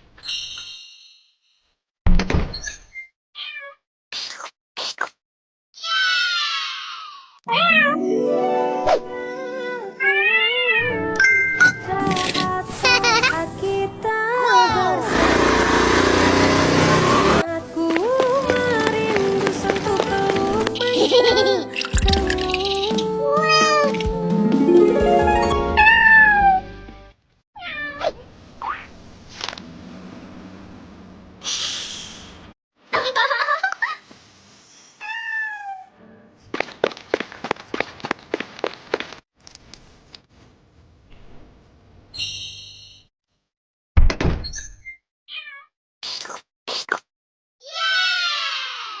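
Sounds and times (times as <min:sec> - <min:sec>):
cartoon cat meow falling in pitch: 0:07.5 - 0:08.0, 0:23.3 - 0:24.0, 0:25.2 - 0:26.6
cat meowing: 0:07.5 - 0:08.0, 0:25.8 - 0:26.6, 0:35.0 - 0:35.9
background music: 0:08.0 - 0:10.0, 0:10.8 - 0:27.1.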